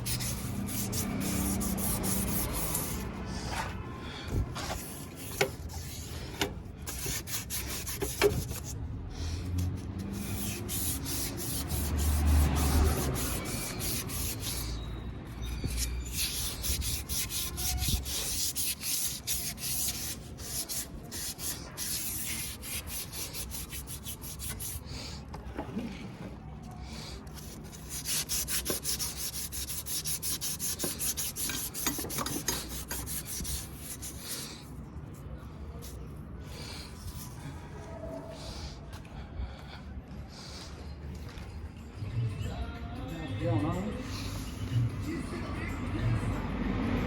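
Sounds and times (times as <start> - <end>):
hand sanding rubbing strokes: 0.0 - 3.8, 4.5 - 25.1, 27.0 - 34.6.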